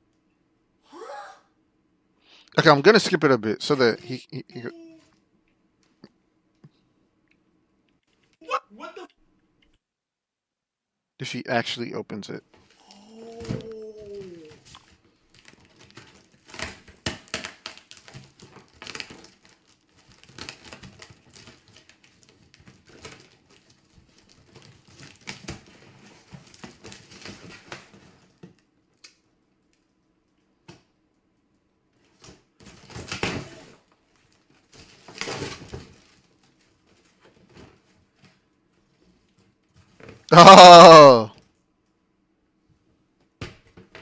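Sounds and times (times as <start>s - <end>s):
packaging tearing and crinkling: 14.5s - 27.8s.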